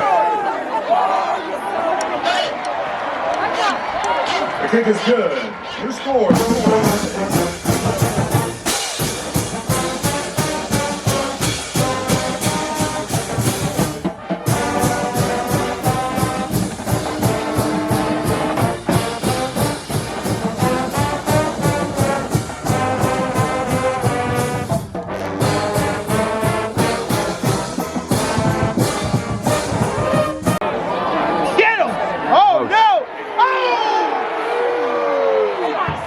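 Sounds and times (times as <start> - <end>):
trombones and trumpets: 2.3 - 30.7
marching band playing: 6.2 - 30.8
steady drum beat: 6.3 - 30.6.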